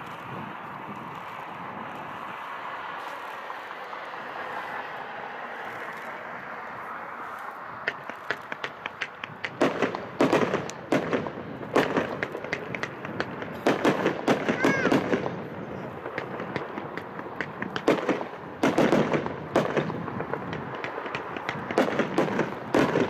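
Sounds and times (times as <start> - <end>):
fireworks popping and banging: 5.5 - 23.0.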